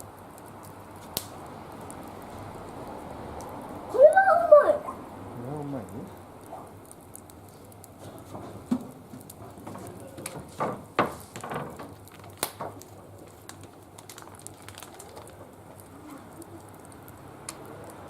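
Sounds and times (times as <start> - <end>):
wood fire crackling: 0.0 - 18.0
loud knocks: 9.6 - 12.0.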